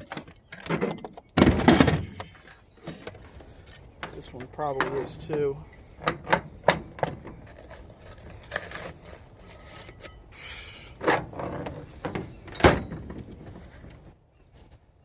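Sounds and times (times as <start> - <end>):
scrap metal knocks and clunks: 0.0 - 7.6, 10.9 - 14.1.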